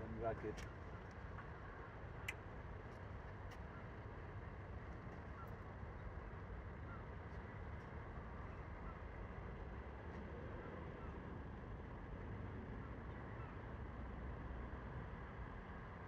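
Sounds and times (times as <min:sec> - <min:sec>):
faint clicks: 0:02.2 - 0:03.7.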